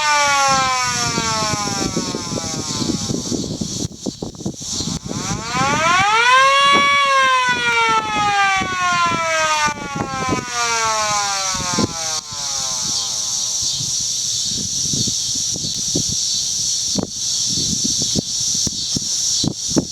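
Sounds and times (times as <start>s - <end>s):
siren wailing: 0.0s - 3.6s, 4.8s - 14.0s
steady high hiss: 0.0s - 7.4s, 8.1s - 19.9s.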